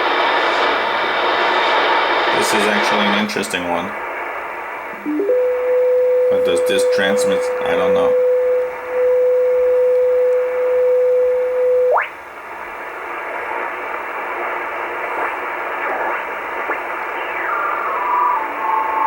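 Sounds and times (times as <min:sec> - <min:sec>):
radio band hiss: 0:00.0 - 0:09.7, 0:10.4 - 0:19.0
radio carrier beat tone: 0:04.9 - 0:12.0, 0:13.3 - 0:19.0
two-tone teletype warble: 0:06.3 - 0:08.2, 0:15.2 - 0:19.0.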